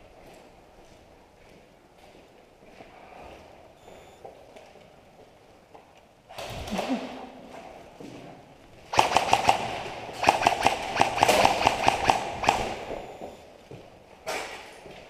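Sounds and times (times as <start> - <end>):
airsoft guns firing: 8.9 - 13.1.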